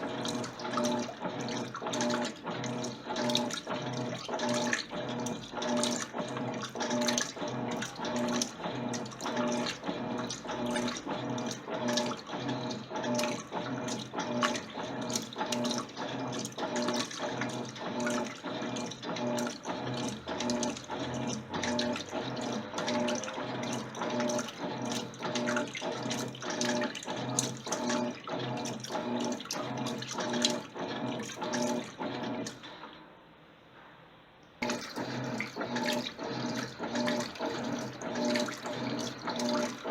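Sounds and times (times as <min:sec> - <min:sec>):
water sloshing: 0:00.0 - 0:32.7, 0:34.6 - 0:39.9
washing machine motor pulsing hum: 0:00.0 - 0:33.5, 0:34.6 - 0:39.9.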